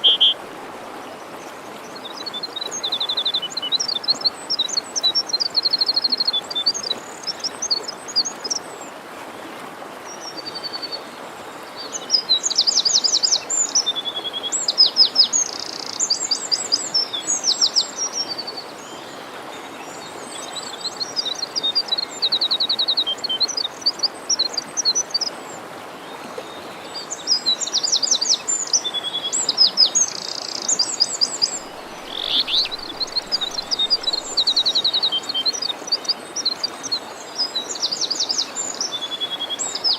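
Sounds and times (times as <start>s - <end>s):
forest stream rushing: 0.0s - 39.9s
songbirds chirping and trilling: 27.0s - 39.9s.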